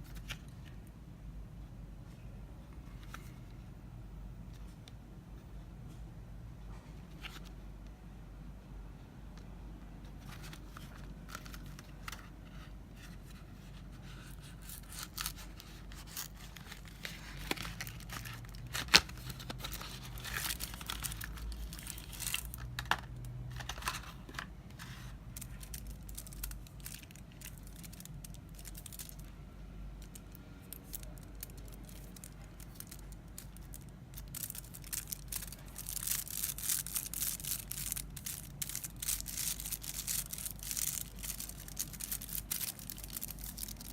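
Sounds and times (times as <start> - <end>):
wrapper being torn and crinkled: 14.3 - 24.0, 25.4 - 29.3, 30.0 - 43.9.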